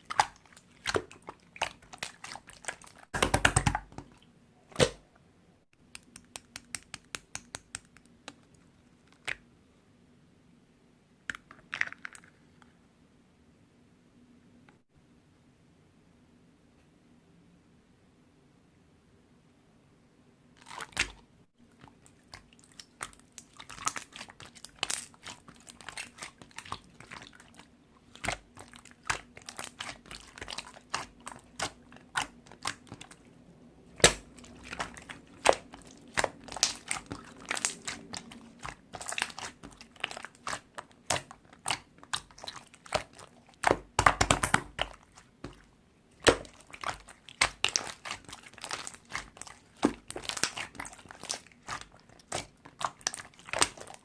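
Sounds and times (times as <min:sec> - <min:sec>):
slime squished by hand: 0:21.8 - 0:33.3, 0:33.9 - 0:54.0.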